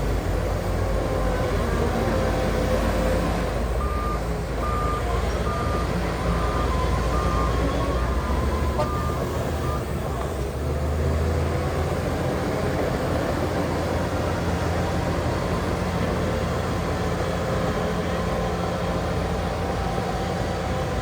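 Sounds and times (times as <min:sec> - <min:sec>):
heavy diesel machinery rumbling: 0:00.0 - 0:21.0
reversing alarm beeping: 0:03.8 - 0:09.9.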